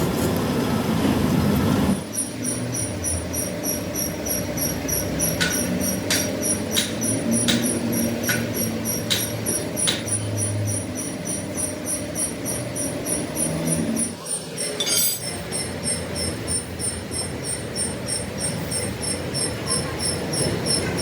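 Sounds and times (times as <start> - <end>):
workshop machinery humming: 0.0 - 21.0
sharp metallic clicks: 3.6 - 12.9.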